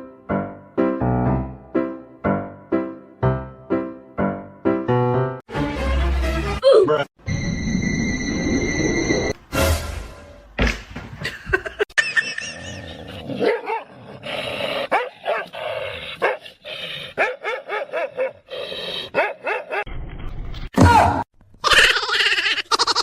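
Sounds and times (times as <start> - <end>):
dog barking and yipping: 13.4 - 14.0, 14.9 - 15.6, 16.2 - 16.5, 17.2 - 18.5, 19.1 - 19.9.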